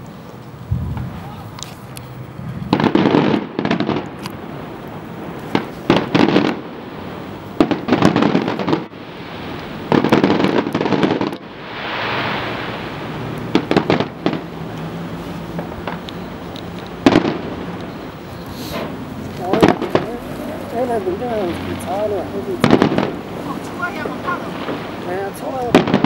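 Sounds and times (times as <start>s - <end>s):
fireworks exploding with crackling bangs: 0.0s - 26.0s
rushing hiss: 8.8s - 16.0s, 17.4s - 25.5s.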